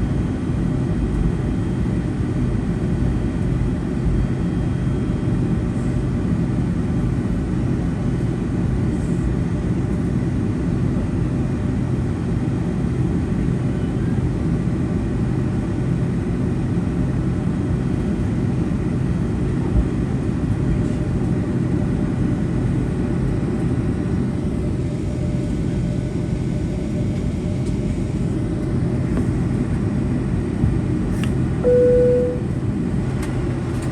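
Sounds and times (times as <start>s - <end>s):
airliner cabin rumble: 18.6s - 33.9s
faint steady tone: 31.6s - 32.5s.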